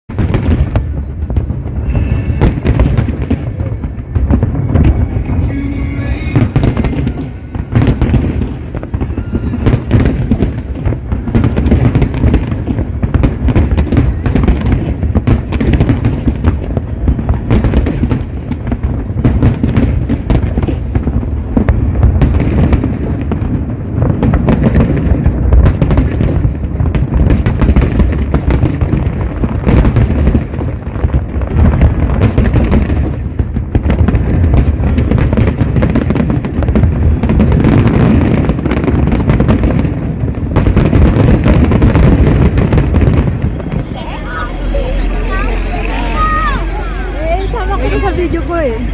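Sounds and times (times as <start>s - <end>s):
fireworks booming and crackling: 0.0s - 48.9s
low rumble: 0.8s - 13.6s, 42.1s - 48.9s.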